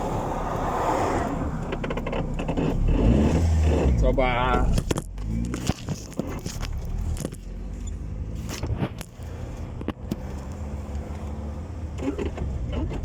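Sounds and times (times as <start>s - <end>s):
car engine and road noise: 0.0s - 13.0s.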